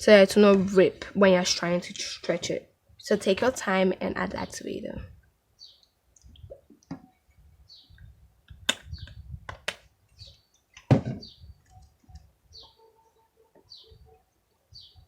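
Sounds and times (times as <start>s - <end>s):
small birds chirping: 3.0s - 8.2s, 8.8s - 9.4s, 10.0s - 15.0s.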